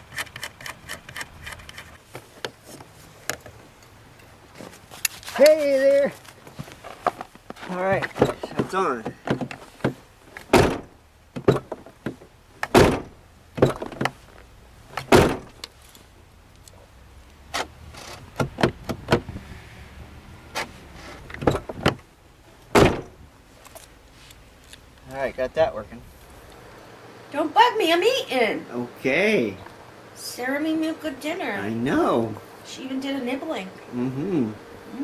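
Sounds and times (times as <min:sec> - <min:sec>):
truck door latch clacking shut: 0:08.2 - 0:14.2, 0:15.0 - 0:15.7, 0:17.5 - 0:19.4, 0:20.5 - 0:22.1, 0:22.7 - 0:23.2.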